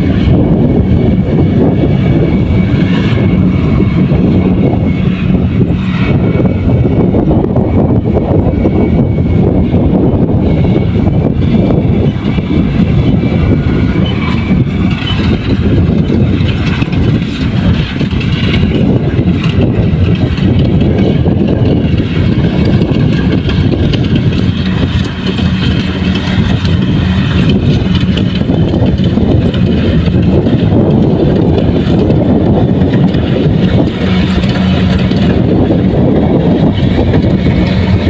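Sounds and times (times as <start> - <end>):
combine harvester engine drone: 0.0 - 38.0.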